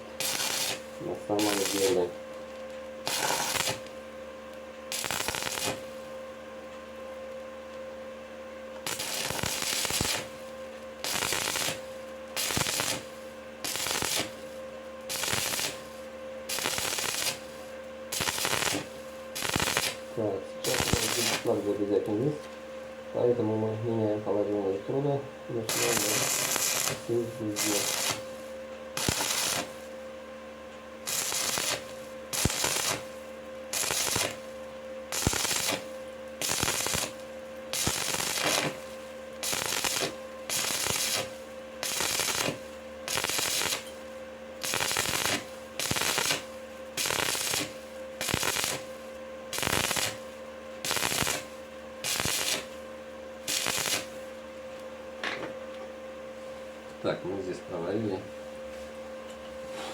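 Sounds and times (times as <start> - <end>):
welding arc crackling: 0.0 - 4.0, 4.9 - 6.1, 8.7 - 22.4, 25.5 - 30.0, 31.0 - 54.4
steady hum: 0.0 - 59.9.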